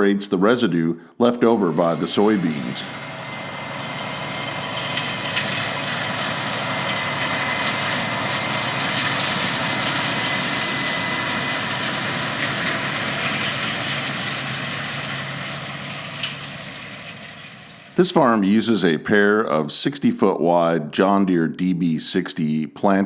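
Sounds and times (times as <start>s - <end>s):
steady high whine: 0.0s - 20.2s
tractor diesel engine running: 1.3s - 18.0s.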